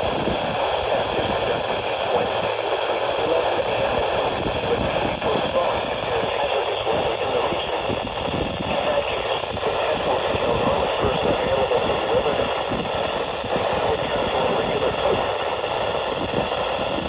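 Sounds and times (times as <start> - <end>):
radio static hiss and crackle: 0.0 - 17.0.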